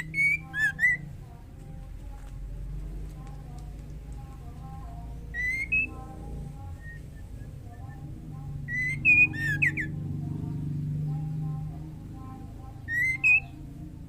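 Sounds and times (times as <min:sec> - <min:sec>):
bird whistling: 0:00.0 - 0:01.1, 0:05.3 - 0:06.0, 0:06.8 - 0:08.1, 0:08.7 - 0:10.0, 0:12.9 - 0:13.6
soft warbled bird notes: 0:00.0 - 0:01.1, 0:05.2 - 0:10.8, 0:12.2 - 0:13.7
steady low hum: 0:00.0 - 0:14.0.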